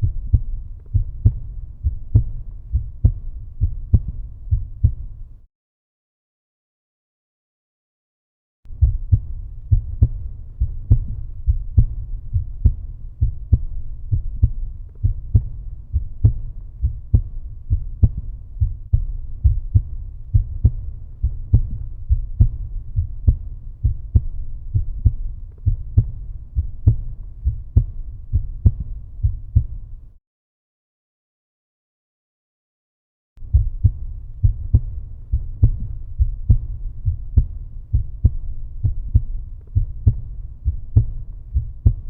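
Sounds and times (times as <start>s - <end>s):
faint low hum: 0.0s - 5.4s, 8.7s - 30.2s, 33.4s - 42.0s
heartbeat thuds: 0.0s - 5.4s, 8.7s - 30.1s, 33.4s - 42.0s.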